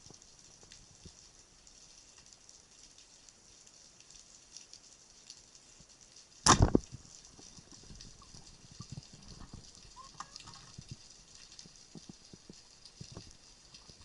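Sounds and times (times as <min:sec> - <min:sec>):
faint steady crackling: 0:00.0 - 0:14.0
speargun shot: 0:06.4 - 0:06.8.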